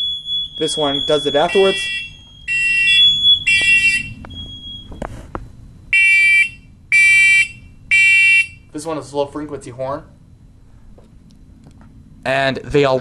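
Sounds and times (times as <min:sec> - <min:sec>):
higher steady alarm tone: 0:00.0 - 0:05.1, 0:05.7 - 0:10.8
smoke alarm beeps: 0:00.0 - 0:05.1, 0:05.9 - 0:08.7.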